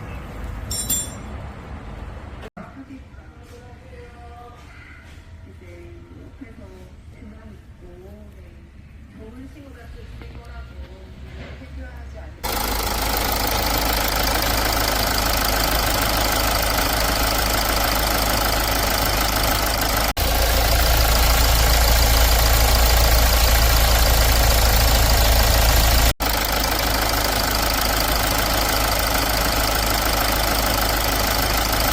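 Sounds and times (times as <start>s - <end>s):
diesel engine idling: 12.4s - 31.9s.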